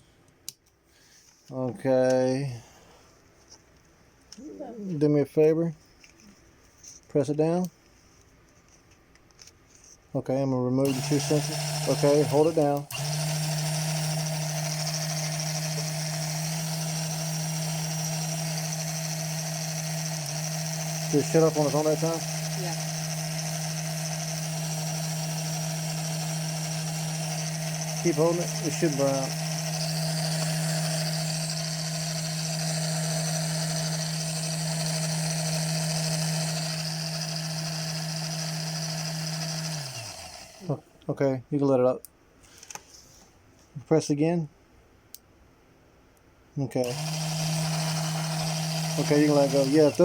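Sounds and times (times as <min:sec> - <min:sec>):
paper shredder motor running: 0:10.8 - 0:40.8, 0:46.8 - 0:50.0.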